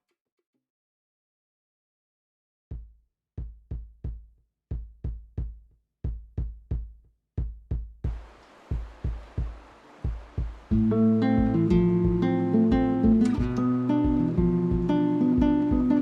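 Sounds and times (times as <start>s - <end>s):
kick drum beats: 2.7s - 16.0s.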